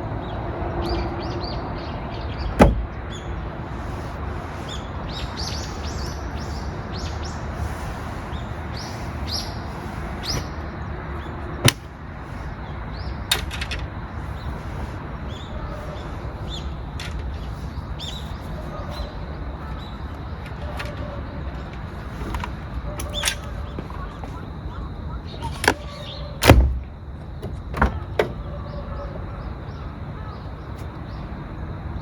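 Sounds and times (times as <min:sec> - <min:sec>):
outdoor background noise: 0:00.0 - 0:32.0
small birds chirping: 0:00.2 - 0:32.0
sharp knock: 0:02.6 - 0:02.9.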